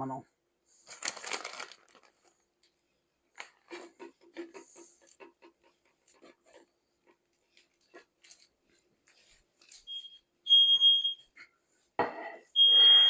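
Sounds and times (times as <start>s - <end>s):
smoke alarm beeping: 9.9s - 11.3s, 12.6s - 13.0s.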